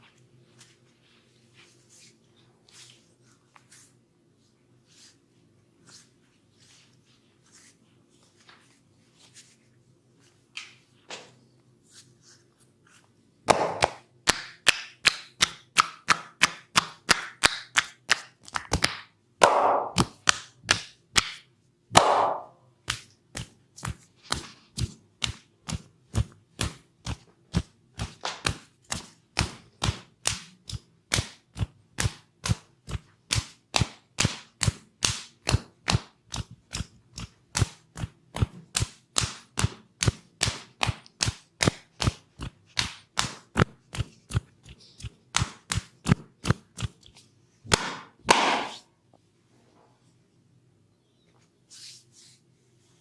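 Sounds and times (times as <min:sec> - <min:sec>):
palms slapping bare skin: 0:13.5 - 0:48.8.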